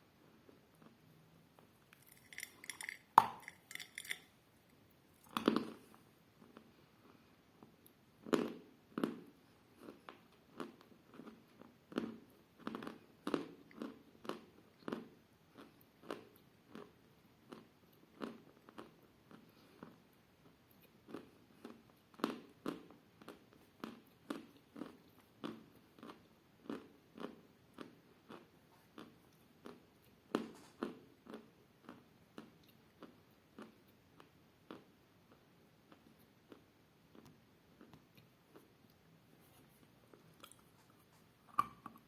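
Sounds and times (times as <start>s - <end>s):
person chewing crunchy chalk: 2.0s - 4.3s.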